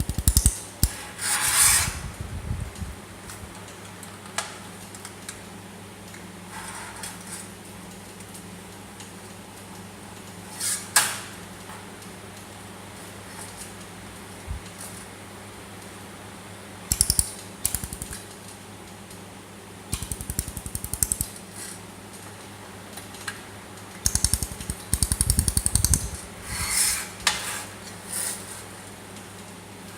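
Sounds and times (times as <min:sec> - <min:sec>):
laser welder rapid ticks: 0:00.0 - 0:00.9, 0:16.9 - 0:18.2, 0:19.9 - 0:21.3, 0:24.0 - 0:26.2.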